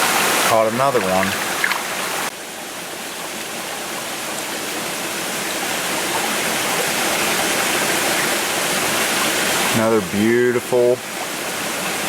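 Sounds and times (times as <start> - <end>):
stream water rushing and splashing: 0.0 - 12.0.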